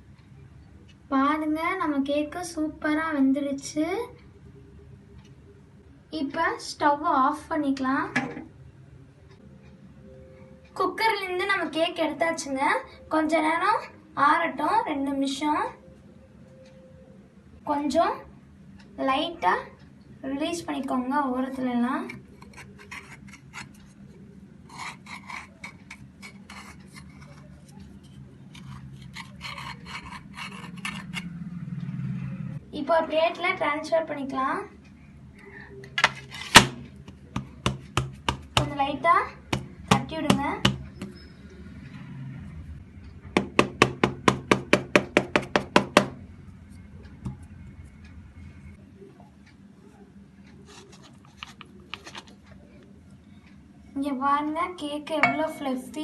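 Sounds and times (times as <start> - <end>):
low steady hum: 0.0 - 44.6, 45.4 - 56.0
utensil scraping a cake tin: 22.0 - 24.1, 24.7 - 31.4.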